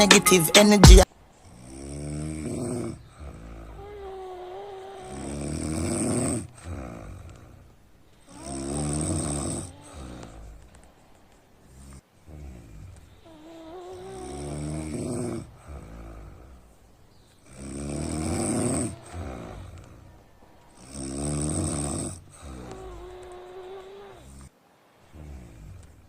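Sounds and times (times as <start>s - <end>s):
person snoring: 0.0s - 7.6s, 8.3s - 10.8s, 11.7s - 16.7s, 17.5s - 24.5s, 25.1s - 26.0s.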